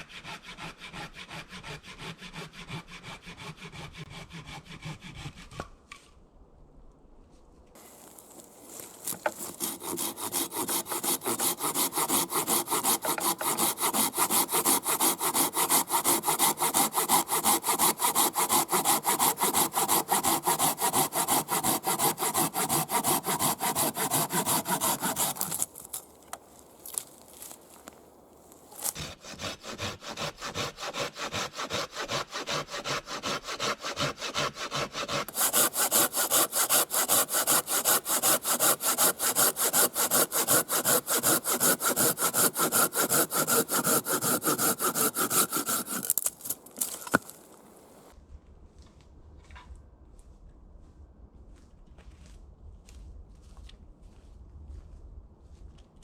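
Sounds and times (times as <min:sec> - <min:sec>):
hand saw cutting wood: 0:00.0 - 0:05.8, 0:08.8 - 0:25.9, 0:28.7 - 0:48.1.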